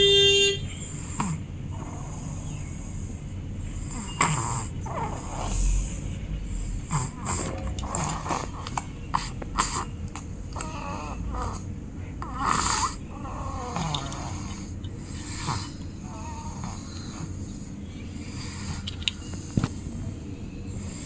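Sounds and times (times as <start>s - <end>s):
baby snoring: 0.9s - 3.1s, 3.7s - 6.0s, 6.6s - 19.7s.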